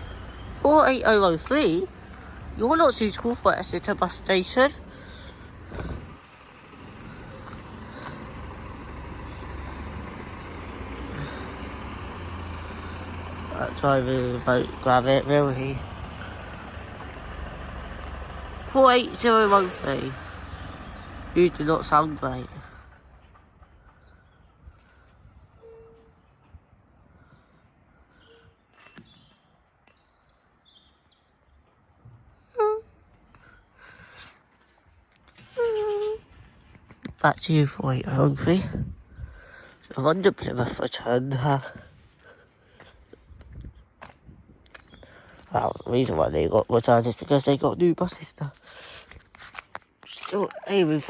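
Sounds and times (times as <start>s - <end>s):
diesel bus engine running: 0.0s - 28.2s, 37.3s - 49.3s
outdoor background noise: 0.0s - 51.0s
loud high-pitched squeal: 19.0s - 21.9s
faint high bird chirps: 25.4s - 26.6s, 28.1s - 33.8s.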